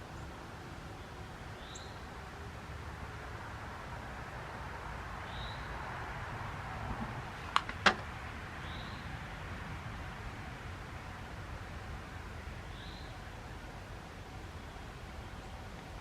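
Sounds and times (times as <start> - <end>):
outdoor background noise: 0.0 - 16.0.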